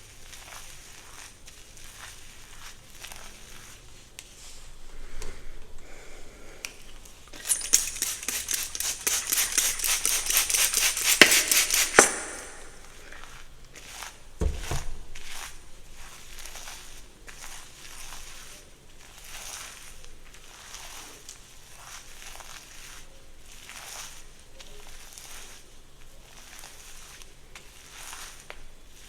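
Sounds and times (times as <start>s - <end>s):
scratchy hair rustling: 0.1s - 4.9s, 6.8s - 13.3s
fast strokes through hair: 7.4s - 12.9s.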